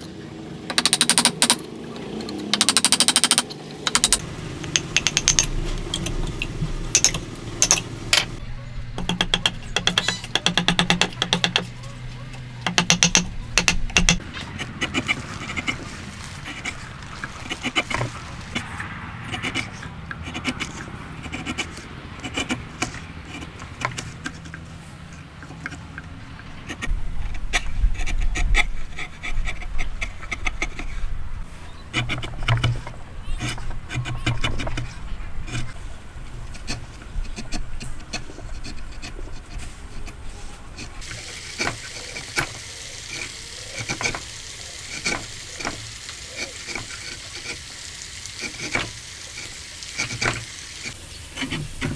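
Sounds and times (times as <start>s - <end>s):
hand tools tapping wood: 9.0s - 11.7s, 12.6s - 15.8s
hand tool scraping wood: 12.7s - 18.6s, 19.2s - 24.6s, 26.7s - 31.1s, 31.7s - 35.8s, 36.4s - 47.7s, 48.4s - 51.9s.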